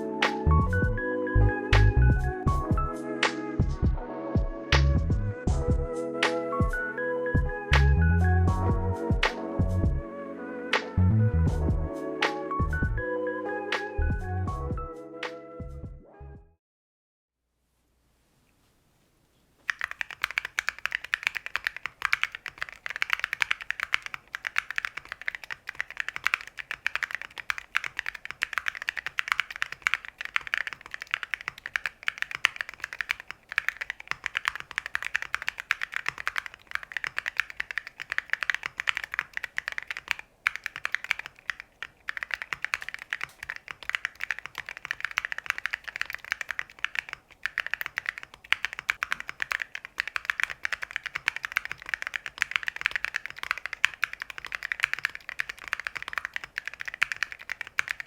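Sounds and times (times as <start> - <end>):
fast mechanical keyboard typing: 19.7 - 58.0.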